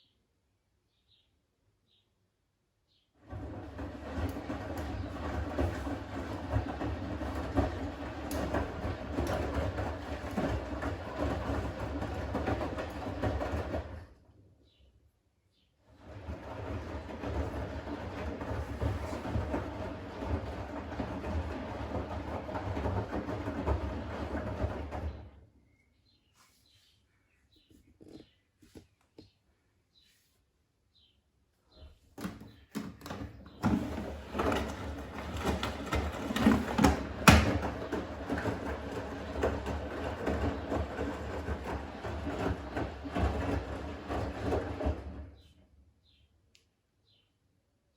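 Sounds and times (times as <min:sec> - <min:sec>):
washing machine motor hum: 0:03.2 - 0:14.4, 0:15.8 - 0:25.7, 0:32.2 - 0:45.7
laundry knocking in drum: 0:32.2 - 0:45.2.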